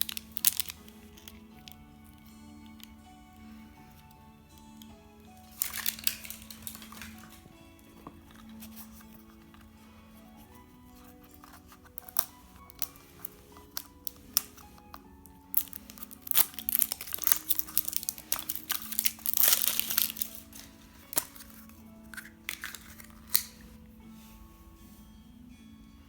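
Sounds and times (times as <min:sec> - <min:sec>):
plastic packaging crinkling: 0:00.0 - 0:23.9
soft background music: 0:00.0 - 0:26.0.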